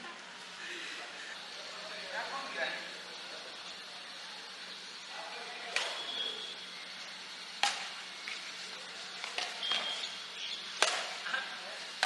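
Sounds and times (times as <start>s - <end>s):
steady hiss: 0.0s - 12.0s
racket hitting shuttlecock: 5.7s - 6.0s, 7.6s - 8.4s, 10.8s - 11.5s.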